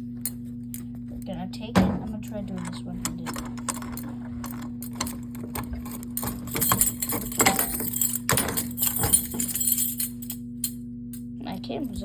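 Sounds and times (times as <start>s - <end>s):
steady low hum: 0.0s - 12.0s
keys jangling: 2.6s - 11.2s.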